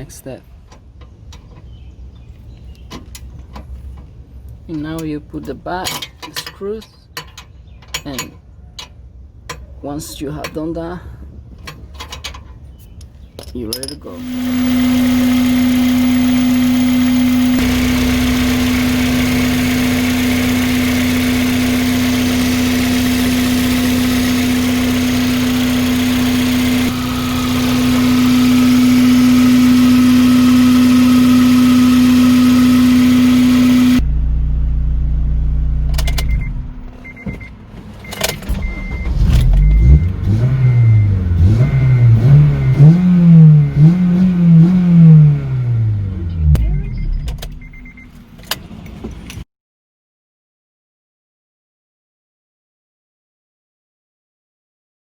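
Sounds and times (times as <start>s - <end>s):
engine clicks: 11.6s - 34.0s, 35.8s - 44.9s, 46.0s - 49.4s
car engine revving: 14.2s - 37.2s, 37.8s - 47.9s.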